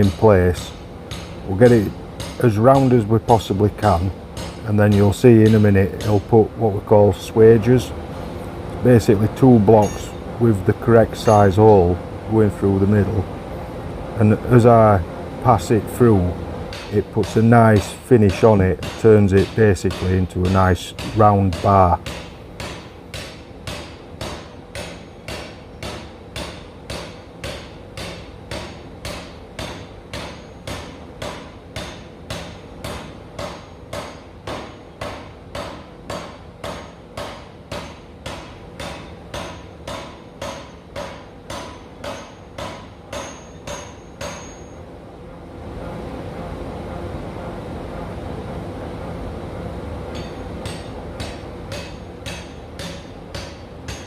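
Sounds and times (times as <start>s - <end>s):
power hammer striking steel: 0.0s - 6.5s, 9.4s - 10.2s, 16.7s - 44.8s, 50.1s - 54.0s.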